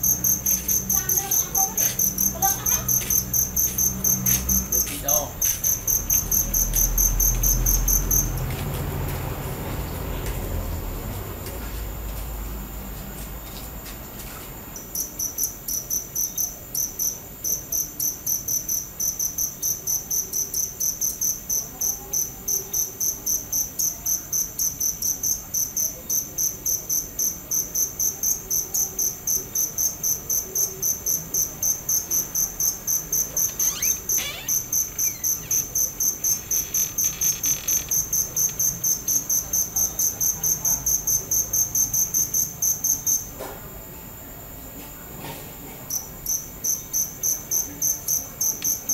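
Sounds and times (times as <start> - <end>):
cricket chirping: 0.0 - 44.8, 45.6 - 48.9.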